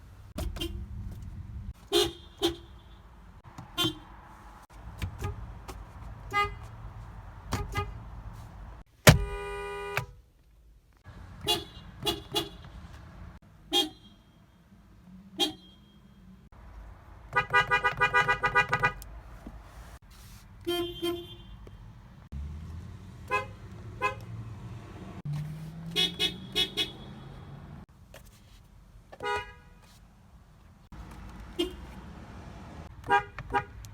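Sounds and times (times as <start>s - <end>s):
car horns honking: 0.4s - 1.0s, 1.8s - 4.3s, 5.0s - 6.8s, 7.4s - 10.2s, 11.3s - 13.0s, 13.6s - 14.5s, 15.3s - 16.4s, 17.3s - 19.0s, 20.6s - 21.9s, 23.2s - 27.8s, 29.2s - 29.9s, 31.5s - 32.1s, 32.8s - 33.9s.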